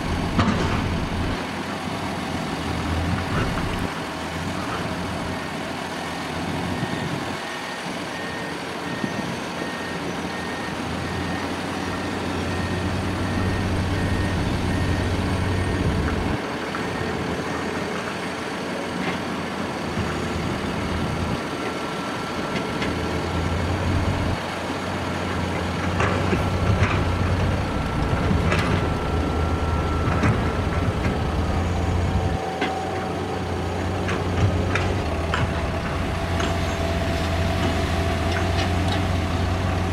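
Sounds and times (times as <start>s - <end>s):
diesel truck engine rumbling: 0.0s - 39.9s
reversing alarm beeping: 6.2s - 18.0s, 26.0s - 39.9s.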